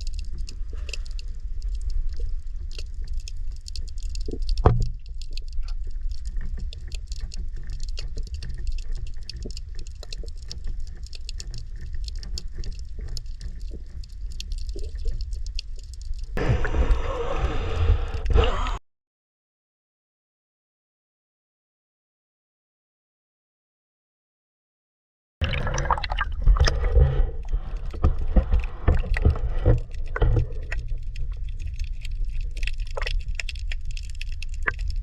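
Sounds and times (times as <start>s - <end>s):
fine crackling clicks: 0.0s - 18.8s, 26.4s - 35.0s
muffled underwater rumble: 0.0s - 18.8s, 25.4s - 35.0s
water rushing and splashing: 25.4s - 34.8s.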